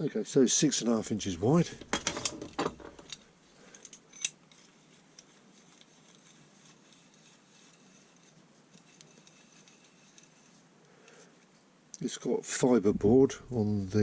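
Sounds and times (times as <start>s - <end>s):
small metal tools clicking: 3.0s - 6.2s.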